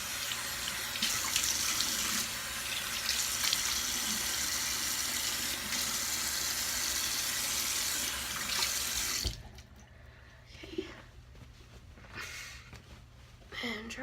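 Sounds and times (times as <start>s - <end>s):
tap running into sink: 8.5s - 9.5s.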